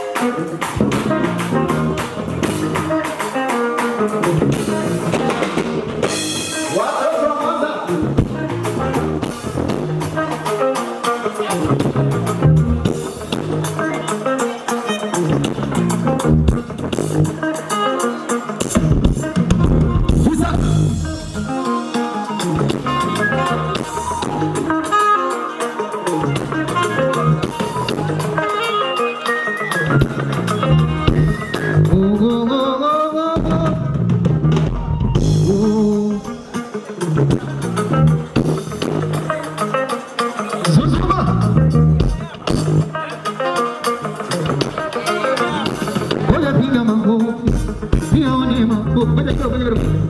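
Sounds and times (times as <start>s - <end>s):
drum kit beat: 0.0s - 32.6s, 33.3s - 50.0s
guitar: 0.0s - 50.0s
live band music: 0.0s - 50.0s
person singing: 17.4s - 34.0s, 34.8s - 50.0s.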